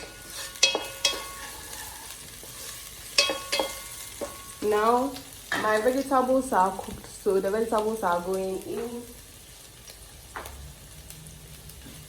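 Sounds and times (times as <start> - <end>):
utensil clinking on pan: 0.0 - 4.6
vegetables sizzling in hot oil: 0.0 - 12.0.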